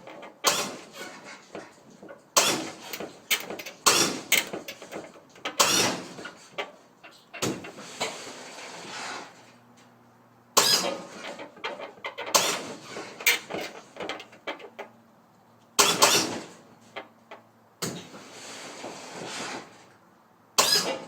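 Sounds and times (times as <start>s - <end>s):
hydraulic suspension clank and hiss: 0.4s - 1.7s, 2.4s - 6.4s, 10.6s - 11.2s, 12.3s - 13.8s, 15.8s - 16.5s, 20.6s - 21.0s.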